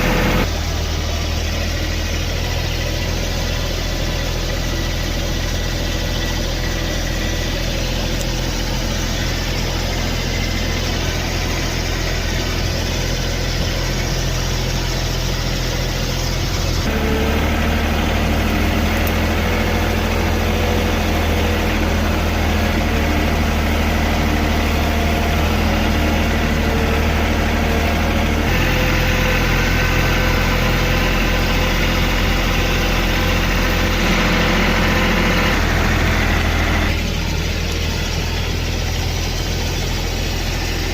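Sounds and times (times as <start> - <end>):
heavy engine running: 0.0 - 40.9.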